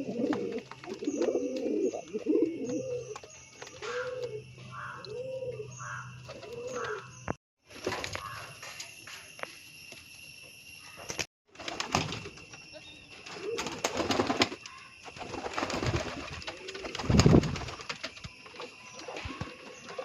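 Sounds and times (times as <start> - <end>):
pigeons cooing: 0.0 - 7.1, 13.2 - 17.8.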